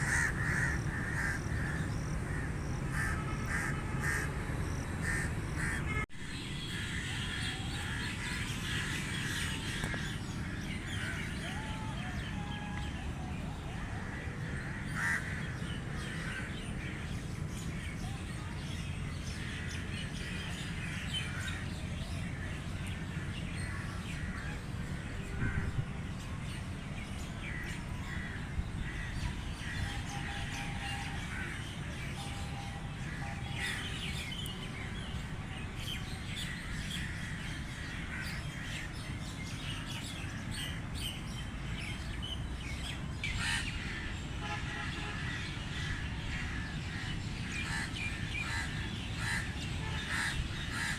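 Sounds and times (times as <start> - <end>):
crows cawing: 0.0 - 6.0, 14.6 - 16.4, 43.4 - 44.1, 47.6 - 50.9
low background rumble: 0.0 - 6.1
birds chirping: 0.0 - 50.9.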